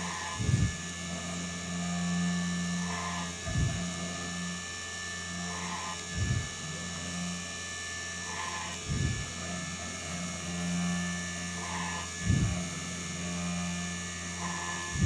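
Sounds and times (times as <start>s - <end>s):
spindle motor humming: 0.0s - 15.0s
stepper motors moving: 0.0s - 15.0s.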